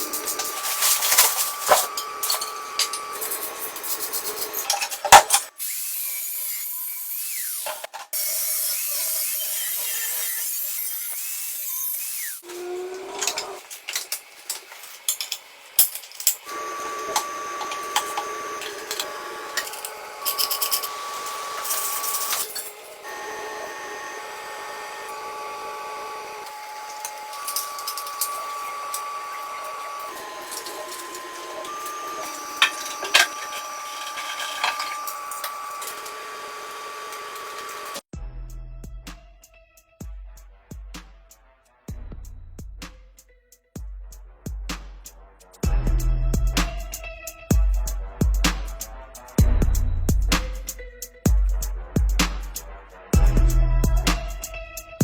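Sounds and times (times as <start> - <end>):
tools rubbing and scraping: 0.0 - 38.0.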